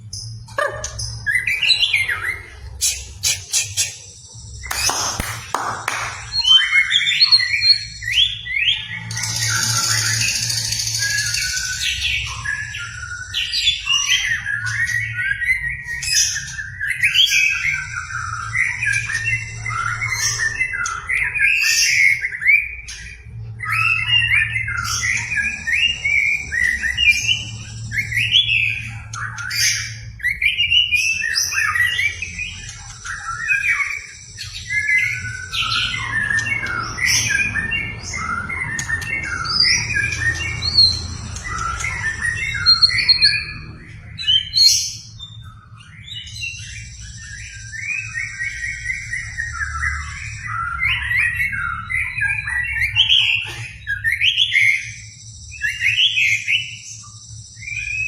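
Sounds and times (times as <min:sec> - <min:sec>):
bird singing varied whistles: 0:02.7 - 0:23.0.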